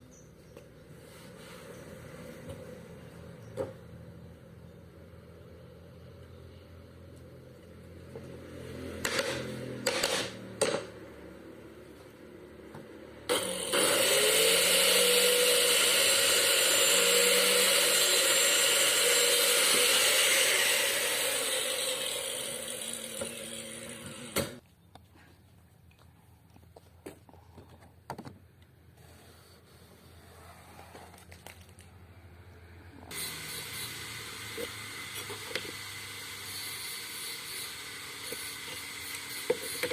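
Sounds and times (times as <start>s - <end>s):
power tool whining: 13.3s - 24.6s, 33.1s - 39.9s.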